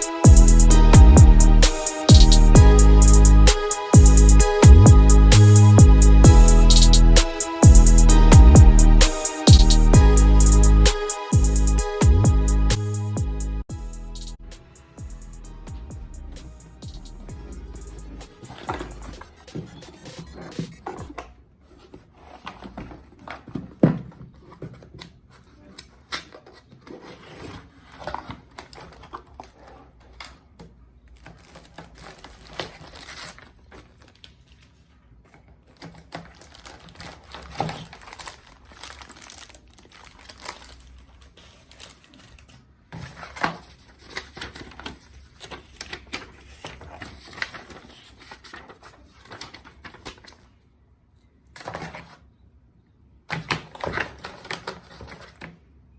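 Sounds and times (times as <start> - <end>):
plastic wrap crinkling and tearing: 31.2 - 34.8, 35.7 - 42.6.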